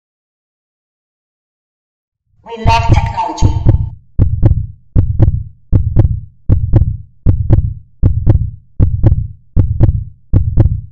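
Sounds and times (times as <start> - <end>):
heartbeat thumps: 2.6 - 10.9.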